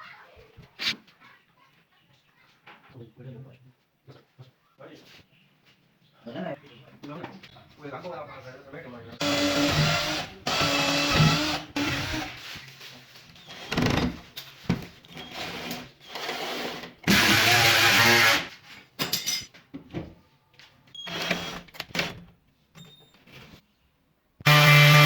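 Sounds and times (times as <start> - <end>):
power tool running in bursts: 24.4 - 25.0.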